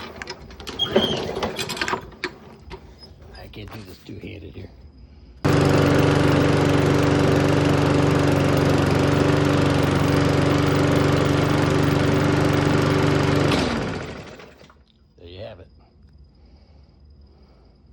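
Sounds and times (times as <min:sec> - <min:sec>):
lawn mower engine running: 0:05.5 - 0:14.8.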